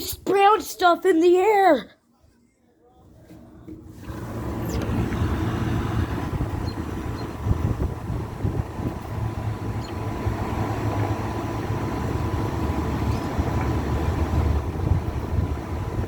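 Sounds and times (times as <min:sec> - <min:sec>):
wind buffeting microphone: 0:04.0 - 0:16.0.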